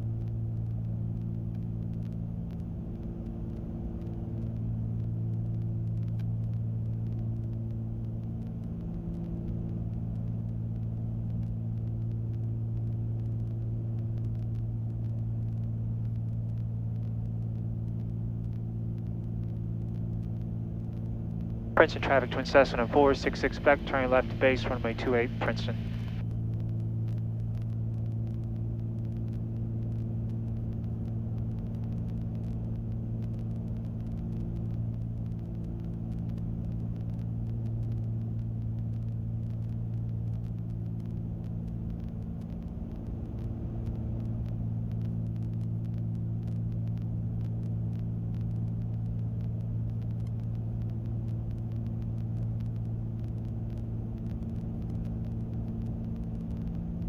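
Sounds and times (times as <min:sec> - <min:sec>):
propeller plane engines droning: 0:00.2 - 0:57.0.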